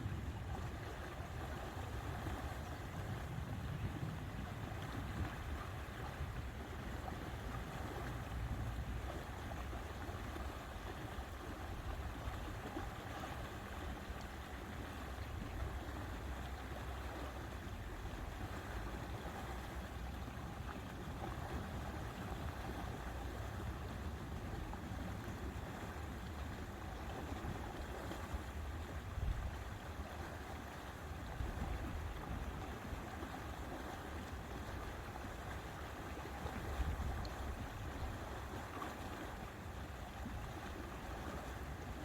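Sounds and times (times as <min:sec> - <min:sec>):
wind buffeting microphone: 0:00.0 - 0:12.9, 0:18.4 - 0:30.1, 0:36.2 - 0:38.4.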